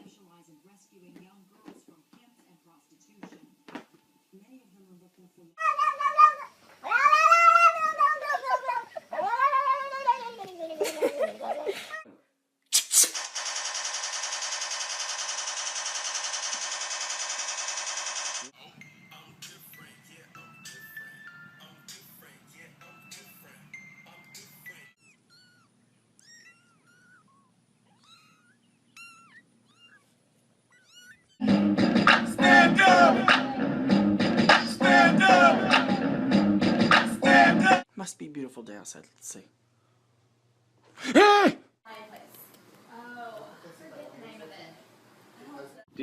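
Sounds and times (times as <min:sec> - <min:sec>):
cat yowling: 0:05.6 - 0:10.3, 0:25.0 - 0:30.1, 0:30.7 - 0:31.4
pulsing buzzing rattle: 0:13.2 - 0:18.5.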